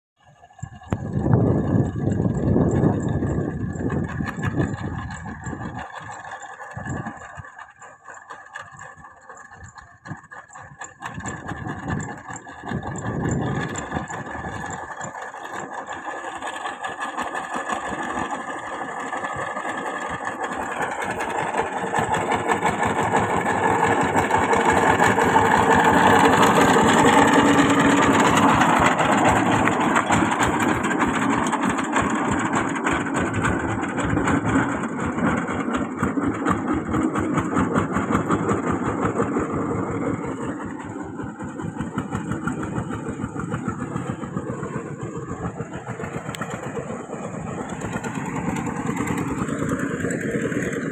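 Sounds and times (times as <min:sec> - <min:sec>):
diesel engine chugging: 0:00.2 - 0:50.9.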